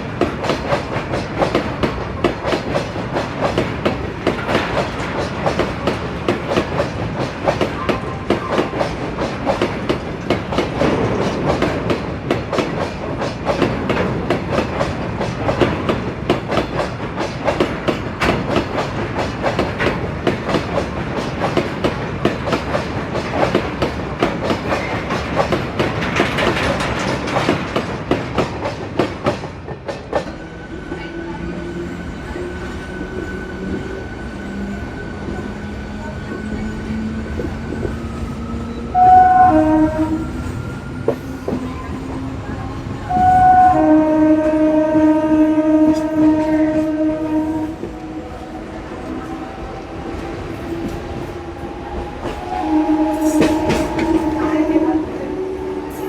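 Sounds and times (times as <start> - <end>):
train wheels clattering over rails: 0.0 - 31.2, 45.8 - 56.0
train rumble: 0.0 - 56.0.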